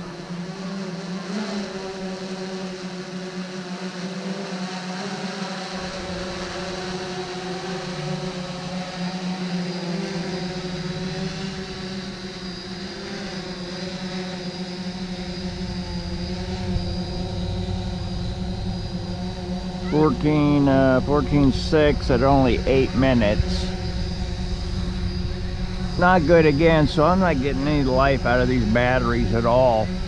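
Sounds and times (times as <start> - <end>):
drone propellers buzzing: 0.0 - 30.0
low rumble: 14.9 - 30.0.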